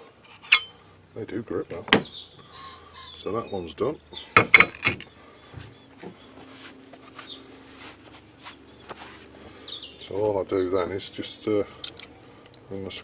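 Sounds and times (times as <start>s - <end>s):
faint steady hum: 0.0s - 13.0s
faint bird chirps: 0.7s - 6.4s, 7.0s - 10.9s.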